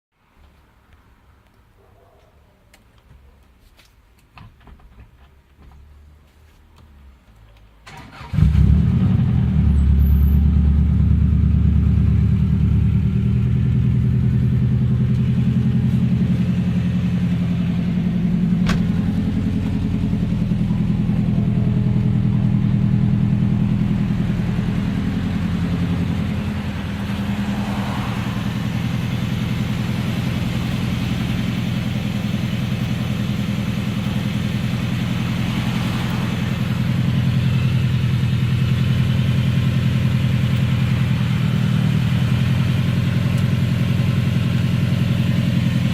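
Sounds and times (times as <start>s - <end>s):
car engine idling with knock: 10.7s - 28.0s, 28.8s - 45.9s.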